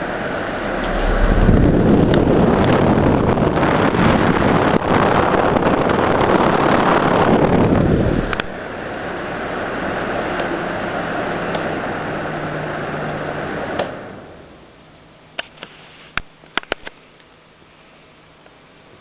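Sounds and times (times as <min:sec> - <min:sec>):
pedestal fan blowing: 0:00.0 - 0:14.4.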